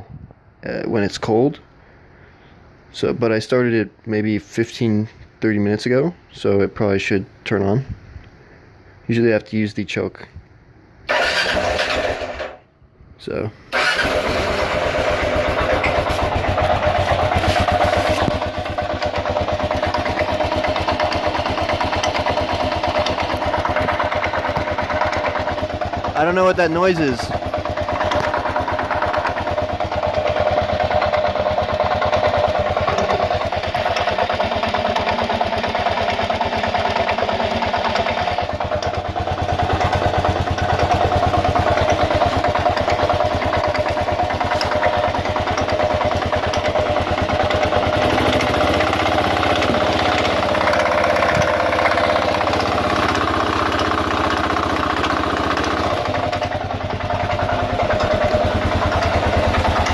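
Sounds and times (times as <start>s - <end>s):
clacking grinding engine noise: 11.1s - 12.6s, 13.7s - 59.9s
motorcycle engine running: 11.1s - 12.6s, 13.7s - 59.9s.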